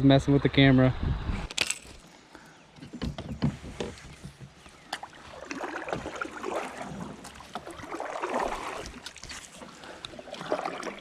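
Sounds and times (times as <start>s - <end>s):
rustling and water wash: 3.4s - 11.0s.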